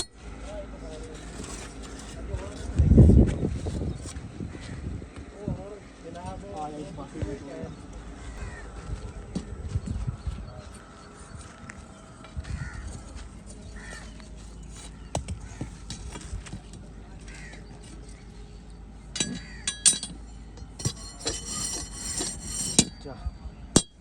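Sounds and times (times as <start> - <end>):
hard objects clinking: 19.2 - 23.1.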